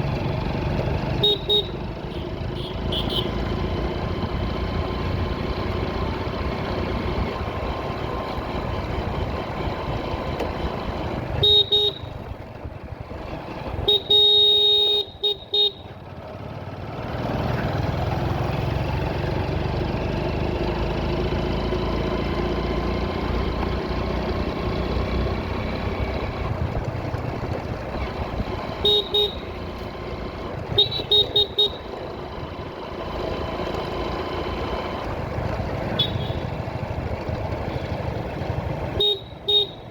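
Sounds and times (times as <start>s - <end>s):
engine and road noise: 0.0s - 39.9s
vehicle horn honking: 1.1s - 3.5s, 11.3s - 12.2s, 13.8s - 16.0s, 28.7s - 29.6s, 30.7s - 32.0s, 35.9s - 36.6s, 38.9s - 39.9s.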